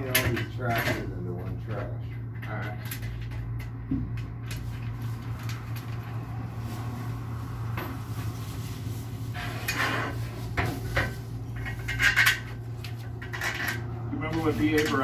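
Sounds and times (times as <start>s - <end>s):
knocks and clatter of parts: 0.0s - 6.3s, 9.4s - 15.0s.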